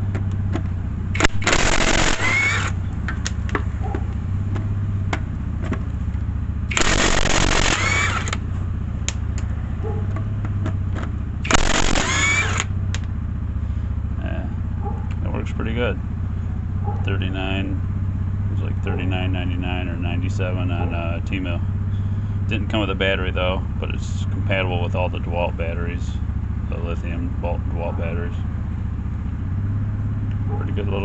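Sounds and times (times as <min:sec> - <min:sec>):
low hum: 0:00.0 - 0:19.0
impact wrench hammering: 0:01.2 - 0:02.7, 0:11.5 - 0:12.7.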